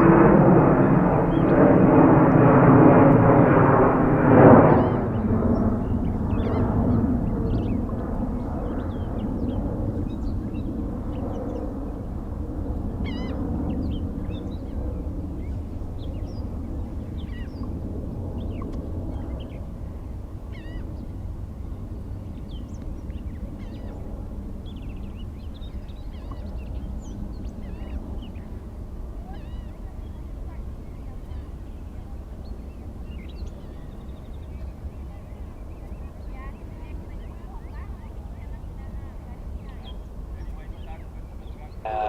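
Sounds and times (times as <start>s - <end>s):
jet aircraft rumble: 0.0s - 42.0s
small birds chirping: 15.4s - 17.7s.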